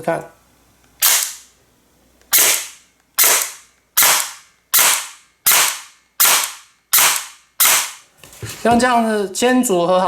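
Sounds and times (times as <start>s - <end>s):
airsoft gun single shots: 1.0s - 1.5s, 2.3s - 8.0s.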